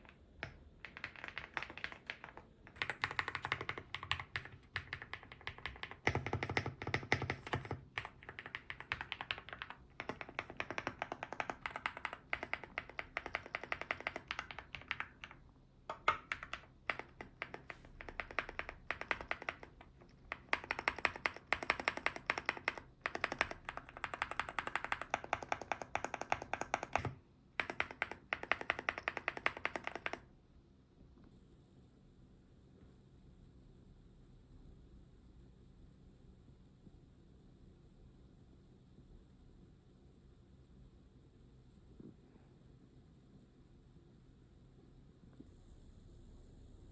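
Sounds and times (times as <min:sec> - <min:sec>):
mechanical keyboard typing: 0:00.0 - 0:30.3.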